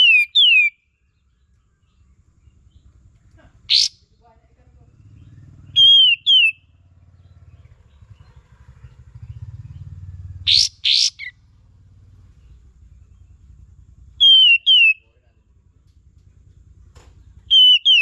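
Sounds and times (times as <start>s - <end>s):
bird whistled calls: 0.0s - 0.9s, 3.7s - 4.0s, 5.7s - 6.7s, 10.5s - 11.4s, 14.2s - 15.2s, 17.4s - 18.0s
harsh raspy bird calls: 0.0s - 0.9s, 3.5s - 4.1s, 4.9s - 13.5s, 14.1s - 15.3s, 17.3s - 18.0s
faint low hum: 0.8s - 6.0s, 6.7s - 17.7s.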